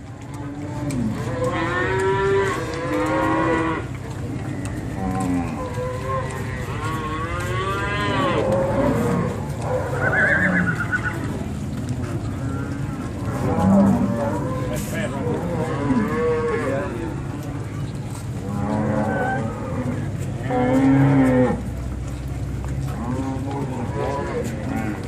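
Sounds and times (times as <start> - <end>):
low background noise: 0.0 - 25.0
cows mooing: 0.2 - 25.0.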